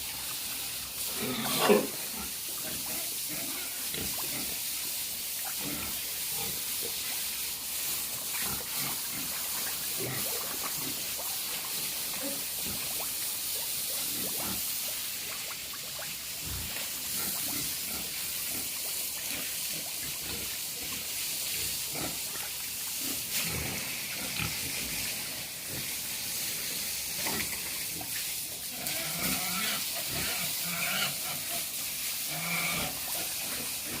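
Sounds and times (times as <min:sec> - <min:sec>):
steady hiss: 0:00.0 - 0:34.0
pigs grunting: 0:01.0 - 0:04.5, 0:05.6 - 0:06.6, 0:23.0 - 0:25.1, 0:28.7 - 0:34.0
pig calls: 0:01.2 - 0:02.0, 0:28.8 - 0:33.4.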